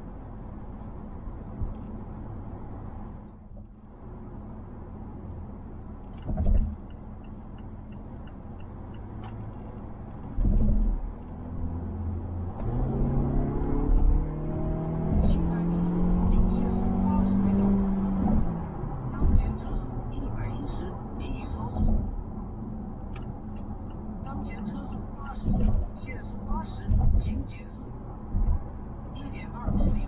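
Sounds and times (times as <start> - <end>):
car road and engine rumble: 0.0 - 30.0
dull thump: 6.2 - 6.8, 10.3 - 11.0.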